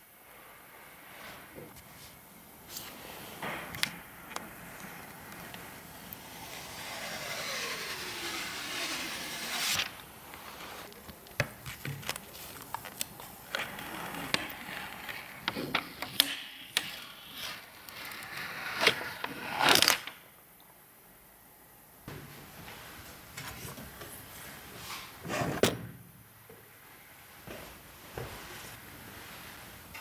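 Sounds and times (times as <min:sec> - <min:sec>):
hissing rubbing: 0:02.1 - 0:11.4.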